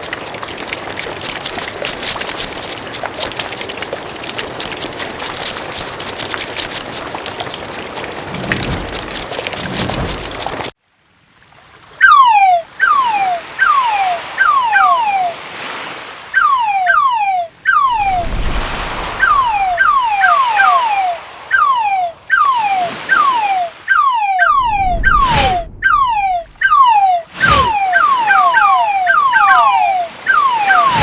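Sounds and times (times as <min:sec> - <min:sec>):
crab chirps sliding down: 0:08.3 - 0:10.6, 0:12.0 - 0:31.0
rushing surf noise: 0:08.3 - 0:10.6, 0:12.9 - 0:31.0.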